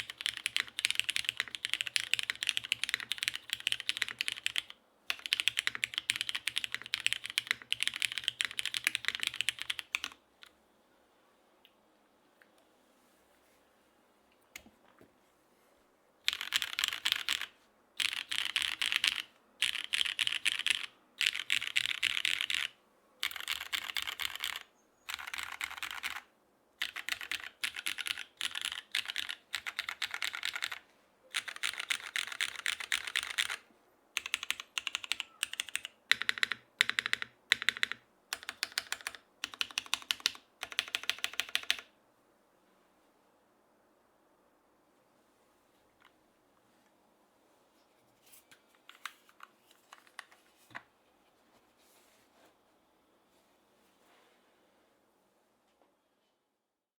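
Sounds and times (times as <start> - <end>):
fast typing on mechanical keyboard: 0.0 - 10.2, 16.3 - 33.6, 34.2 - 41.9.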